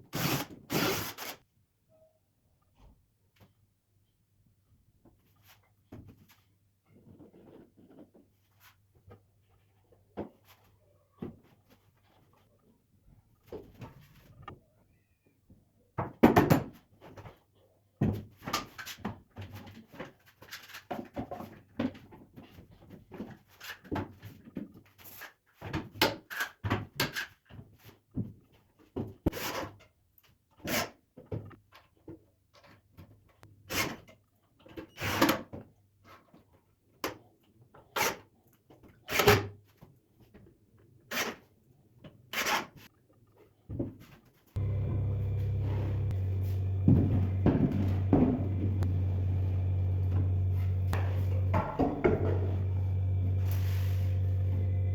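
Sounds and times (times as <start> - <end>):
faint low hum: 44.6 - 54.9.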